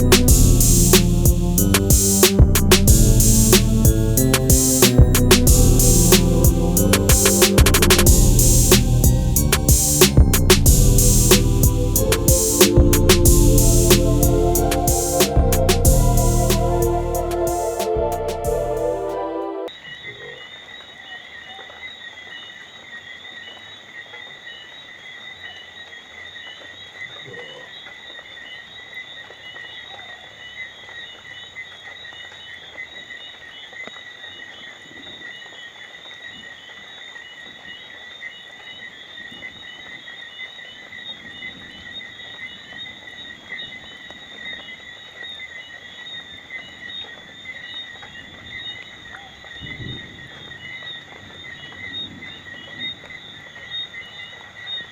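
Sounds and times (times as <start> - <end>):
frogs and insects trilling: 19.7 - 54.9
rain falling: 48.0 - 54.9.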